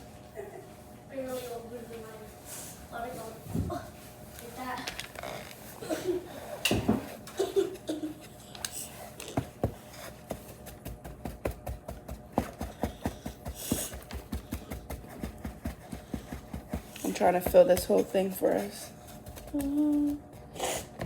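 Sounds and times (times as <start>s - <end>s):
hands working kinetic sand: 9.8s - 20.1s.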